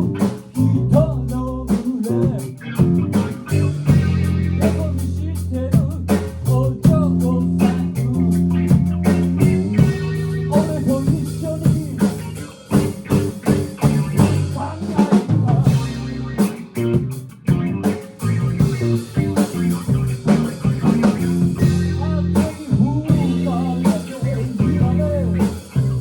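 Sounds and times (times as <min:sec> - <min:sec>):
rock band playing live: 0:00.0 - 0:26.0
drum hits: 0:07.6 - 0:26.0.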